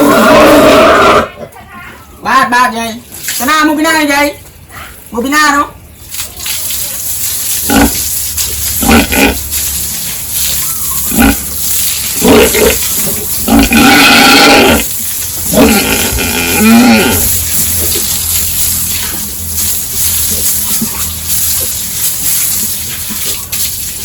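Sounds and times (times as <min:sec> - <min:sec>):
pigs grunting and squealing: 0:00.0 - 0:01.6, 0:07.4 - 0:23.6.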